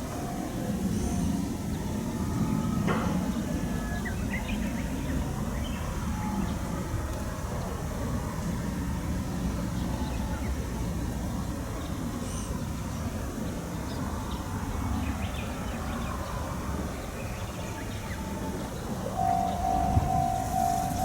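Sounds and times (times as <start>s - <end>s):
steady low rumble: 19.1s - 21.0s.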